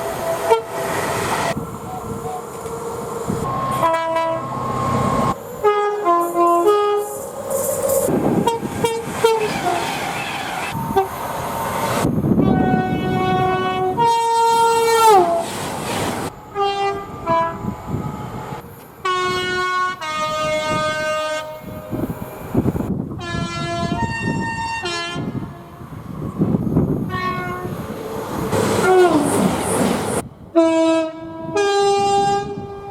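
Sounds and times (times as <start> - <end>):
trains running: 0.0 - 30.6
train horns: 0.4 - 0.9, 3.4 - 7.2, 8.2 - 10.0, 10.9 - 11.1, 12.4 - 15.5, 16.5 - 17.8, 19.0 - 22.2, 23.2 - 25.8, 27.0 - 27.8, 28.8 - 29.5, 30.5 - 32.9.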